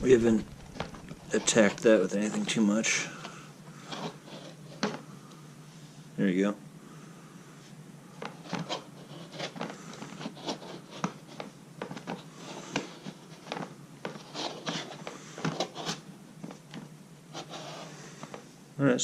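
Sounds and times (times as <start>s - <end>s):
scrubbing hard plastic: 0.0s - 5.0s.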